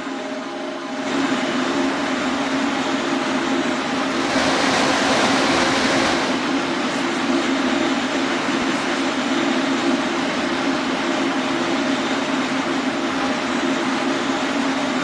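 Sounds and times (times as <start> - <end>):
rushing hiss: 4.0 - 6.6
train motor hum: 4.0 - 6.7.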